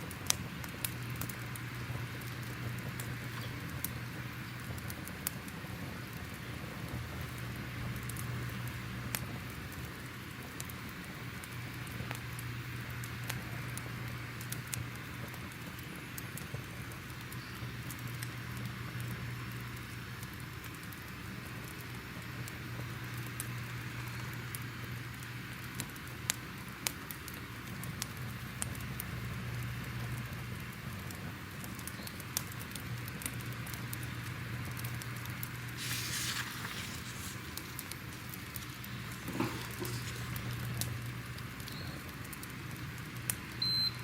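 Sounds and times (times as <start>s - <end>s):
fire crackling and popping: 0.0s - 44.0s
low steady hum: 0.0s - 44.0s.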